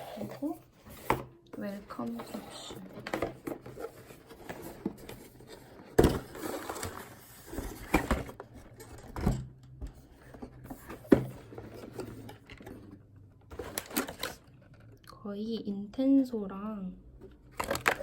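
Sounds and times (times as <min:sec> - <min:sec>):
box rustling: 0:00.0 - 0:09.2, 0:09.9 - 0:14.8, 0:17.6 - 0:18.0.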